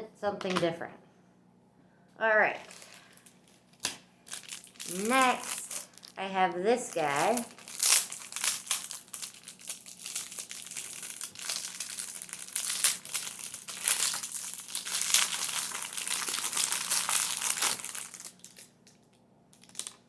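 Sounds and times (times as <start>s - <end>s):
packaging crinkling: 2.6s - 6.2s, 6.8s - 20.0s
crackling handling noise: 6.9s - 20.0s.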